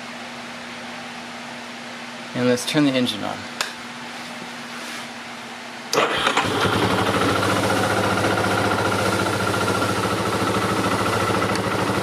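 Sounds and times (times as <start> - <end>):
engine cranking and idling: 5.9 - 12.0.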